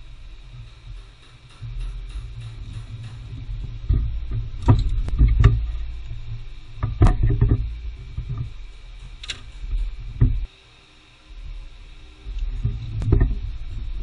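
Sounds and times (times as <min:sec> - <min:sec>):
hand tools knocking on car parts: 0:00.0 - 0:06.1
low steady rumble: 0:00.0 - 0:14.0.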